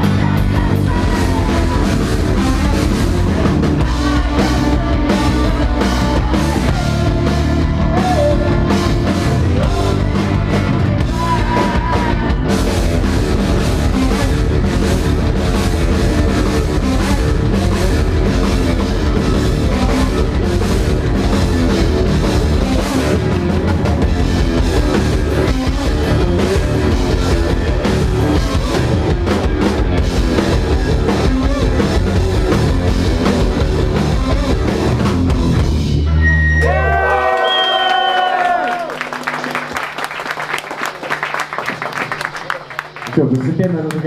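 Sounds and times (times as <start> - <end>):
live rock band playing: 0.0 - 37.4, 38.7 - 44.0.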